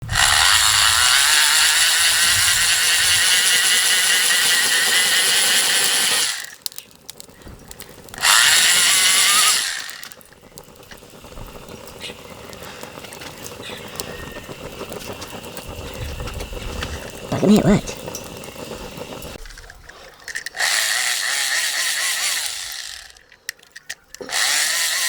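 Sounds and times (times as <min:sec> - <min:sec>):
blower fan motor whining: 0:00.0 - 0:06.5, 0:07.4 - 0:19.4.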